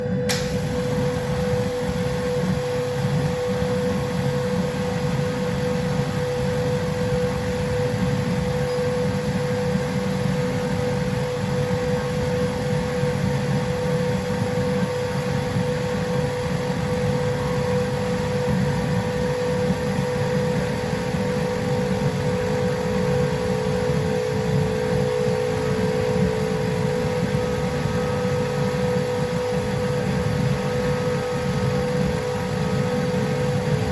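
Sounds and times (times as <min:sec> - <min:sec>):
higher machine tone: 0:00.0 - 0:33.9
milling machine whine: 0:00.0 - 0:33.9
low grinding rumble: 0:07.2 - 0:33.9.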